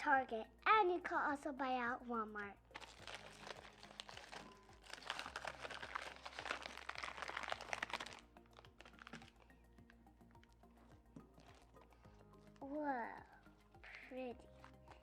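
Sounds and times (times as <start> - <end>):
slime clicking and crackling: 2.7 - 9.5.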